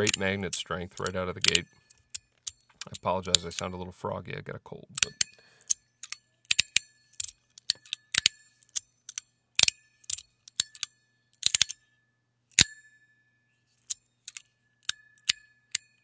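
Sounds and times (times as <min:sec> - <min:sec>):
metal plates clicking against magnets: 0:00.0 - 0:03.7, 0:04.9 - 0:11.8, 0:13.8 - 0:16.0
tuning fork ringing: 0:10.9 - 0:13.7.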